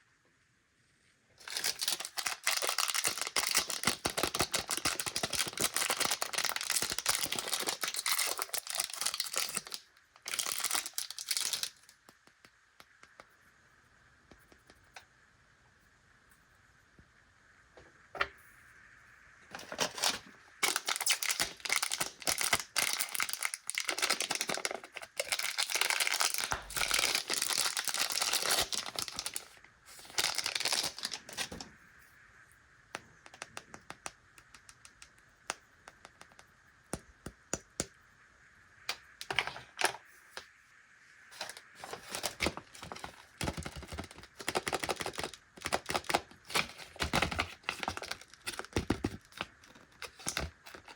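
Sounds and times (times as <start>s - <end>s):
plastic wrappers crinkling and tearing: 1.4s - 12.1s, 19.5s - 31.6s, 41.4s - 50.9s.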